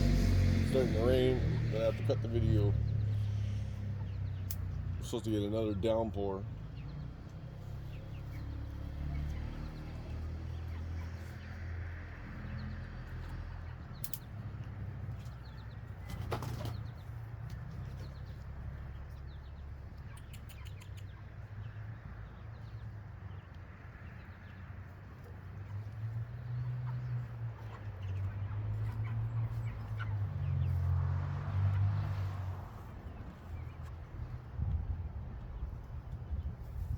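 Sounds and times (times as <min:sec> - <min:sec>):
sharp clicks: 0:14.0 - 0:14.3
wind rumble on microphone: 0:32.4 - 0:36.9.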